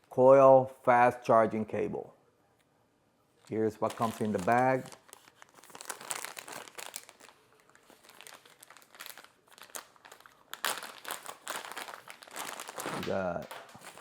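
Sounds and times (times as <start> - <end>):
packaging bag crinkling: 3.4 - 14.0.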